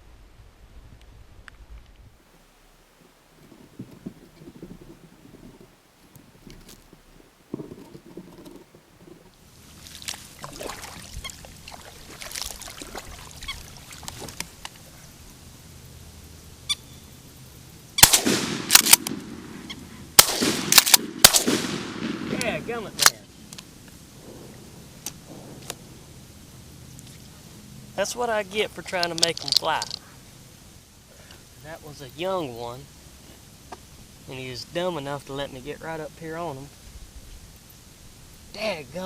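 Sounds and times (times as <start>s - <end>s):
shotgun blasts: 18.0s - 23.3s.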